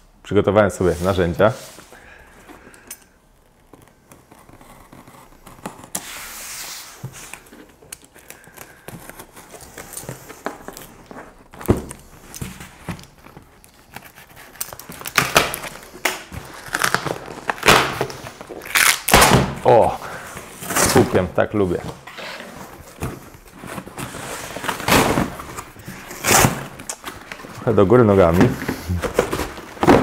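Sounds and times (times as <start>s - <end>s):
tape tearing: 3.4s - 21.1s, 22.8s - 27.5s
cardboard crackling and rustling: 6.8s - 19.0s, 19.6s - 30.0s.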